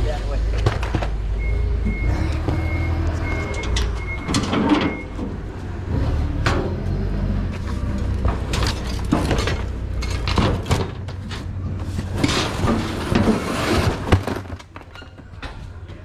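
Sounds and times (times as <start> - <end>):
vehicle idling: 0.0 - 12.2
warning chime beeping: 1.4 - 5.2
sliding door rattling open: 11.8 - 14.6.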